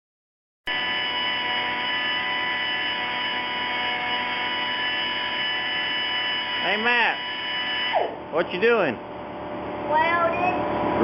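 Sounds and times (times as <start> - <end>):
grinder grinding metal: 0.7 - 7.9.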